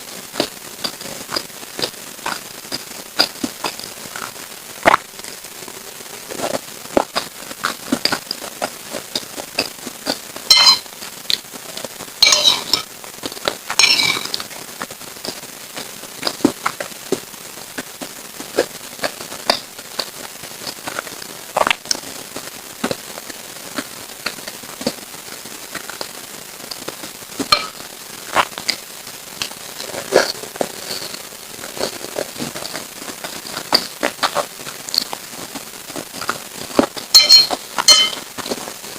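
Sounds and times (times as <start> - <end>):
person chewing food: 0.1 - 22.1, 26.7 - 38.8
wet mouth clicks and crackles: 29.4 - 35.2.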